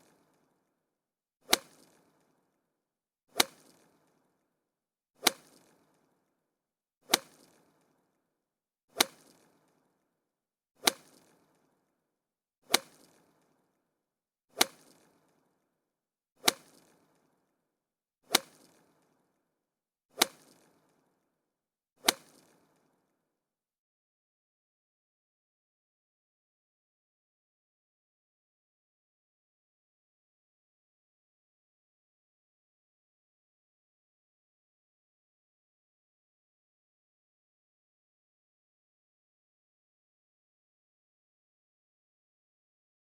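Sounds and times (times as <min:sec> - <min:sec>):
golf club hitting ball: 0:01.5 - 0:01.8, 0:12.7 - 0:13.1, 0:14.6 - 0:14.9, 0:16.4 - 0:16.8, 0:18.3 - 0:18.8, 0:20.2 - 0:20.6, 0:22.0 - 0:22.4.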